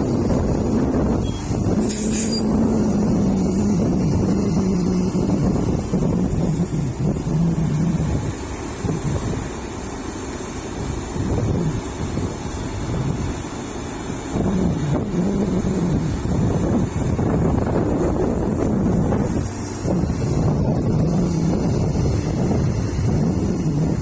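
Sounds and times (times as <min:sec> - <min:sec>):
excavator diesel engine working: 0:00.0 - 0:24.0.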